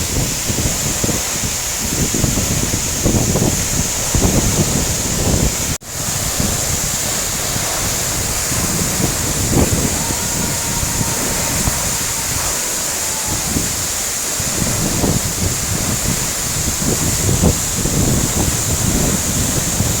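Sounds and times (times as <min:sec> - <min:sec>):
rush of falling water: 0:00.0 - 0:20.0
wind buffeting microphone: 0:00.0 - 0:20.0.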